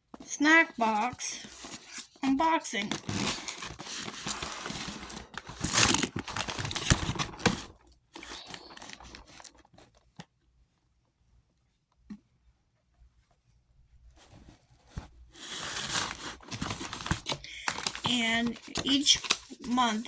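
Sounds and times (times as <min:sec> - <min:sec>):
rustling: 0:00.1 - 0:10.2, 0:13.1 - 0:20.0
packaging tearing and crinkling: 0:02.9 - 0:09.7, 0:15.4 - 0:20.0.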